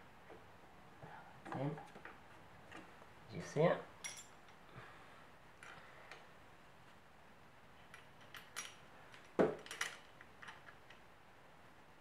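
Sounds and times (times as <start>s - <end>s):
small metal parts clinking: 4.0s - 4.6s, 7.8s - 11.0s.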